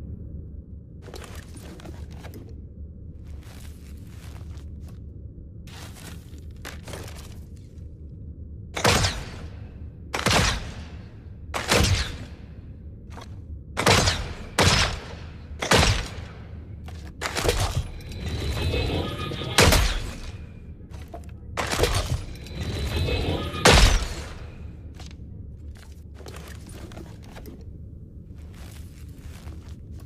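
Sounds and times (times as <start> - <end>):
arrow shots: 10.2 - 12.5.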